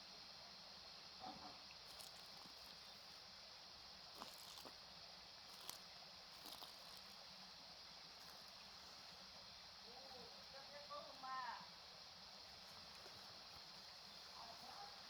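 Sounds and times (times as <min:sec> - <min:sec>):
night insect chorus: 0:00.0 - 0:15.0.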